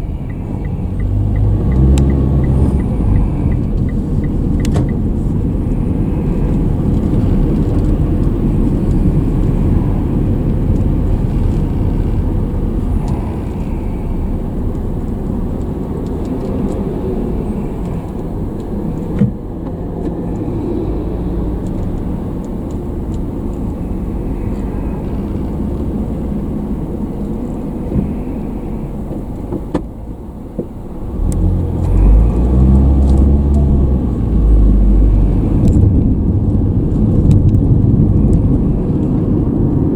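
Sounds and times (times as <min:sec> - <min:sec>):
engine note rising and falling: 0:00.0 - 0:17.6
car engine and road noise: 0:00.0 - 0:39.9.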